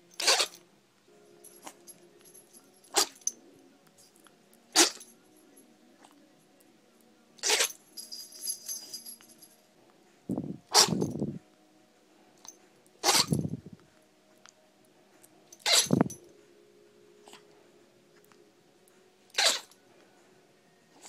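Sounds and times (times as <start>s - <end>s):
small dog sneezing: 13.0s - 13.4s, 15.6s - 16.0s, 19.4s - 19.7s.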